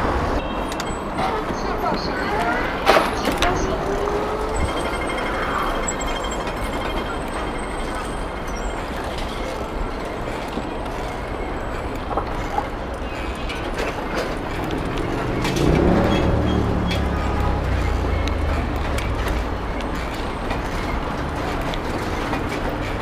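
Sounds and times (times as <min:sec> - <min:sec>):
street traffic noise: 0:00.0 - 0:23.0.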